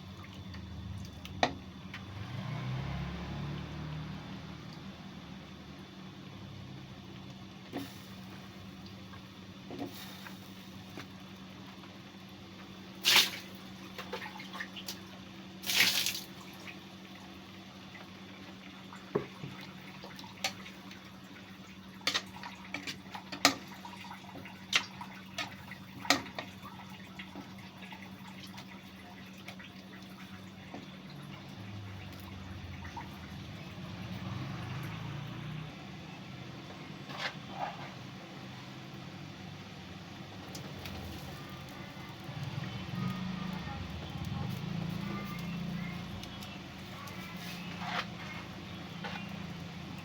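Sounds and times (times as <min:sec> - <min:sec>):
water splashing: 0:15.6 - 0:16.8.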